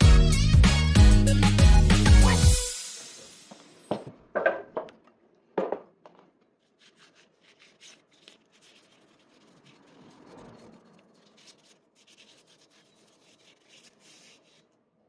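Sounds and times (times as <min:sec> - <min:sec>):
background music: 0:00.0 - 0:03.5.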